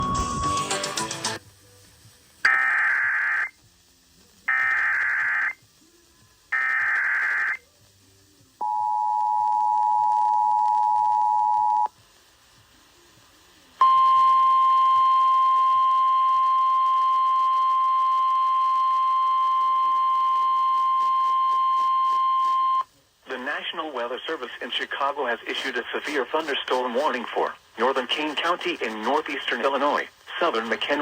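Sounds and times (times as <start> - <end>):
two-tone attention signal: 0.0 - 0.8
loud steady alarm tone: 0.0 - 0.9
data burst tones: 0.0 - 1.0.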